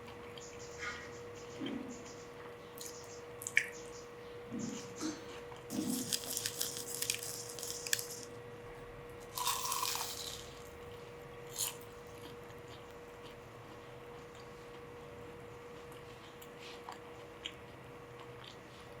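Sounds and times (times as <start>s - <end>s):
crunchy chewing of fried food: 5.3s - 19.0s.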